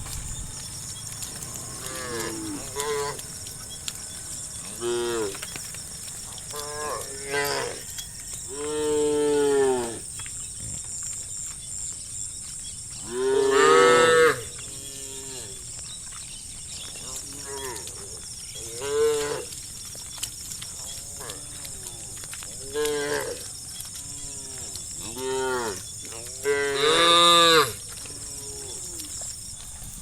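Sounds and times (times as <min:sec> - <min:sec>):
cows mooing: 0:00.0 - 0:10.2, 0:13.0 - 0:15.6, 0:20.8 - 0:23.4, 0:24.0 - 0:29.9.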